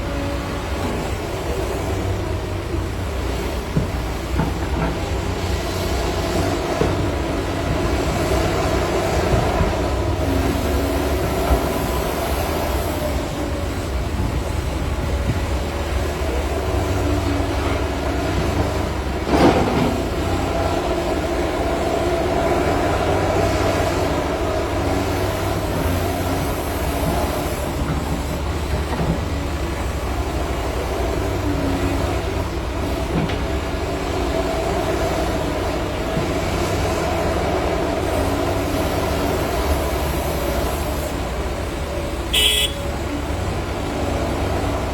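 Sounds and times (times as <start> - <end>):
excavator engine and hydraulics: 0.0 - 44.9.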